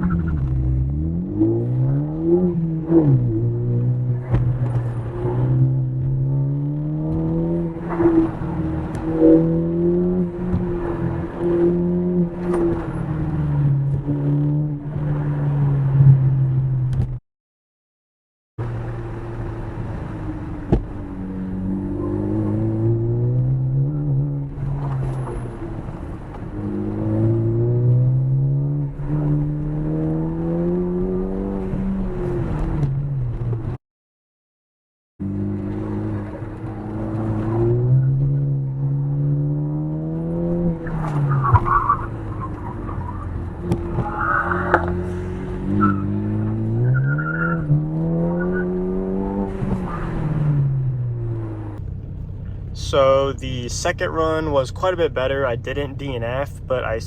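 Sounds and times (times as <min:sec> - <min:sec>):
car engine accelerating: 0:00.0 - 0:17.2, 0:18.6 - 0:33.8, 0:35.2 - 0:57.0
car engine pulling under load: 0:35.2 - 0:57.0.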